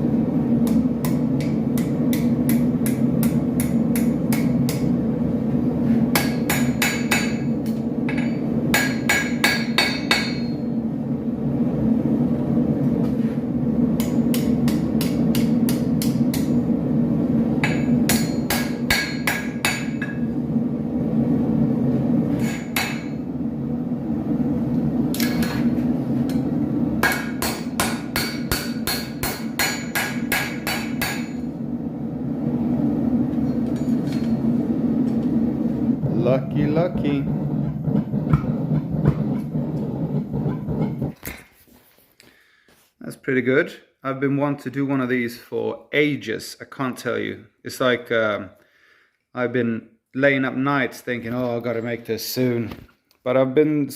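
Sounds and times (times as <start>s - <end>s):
hammer striking steel on anvil: 0.6s - 4.9s, 6.1s - 10.7s, 14.0s - 16.6s, 17.6s - 20.2s, 22.3s - 23.2s, 25.1s - 25.7s, 26.3s - 31.5s
steady low drone: 31.4s - 41.1s.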